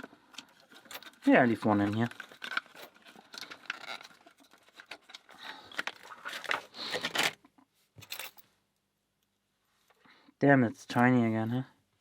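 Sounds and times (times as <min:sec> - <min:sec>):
padlock and keys clinking: 0:08.0 - 0:08.5.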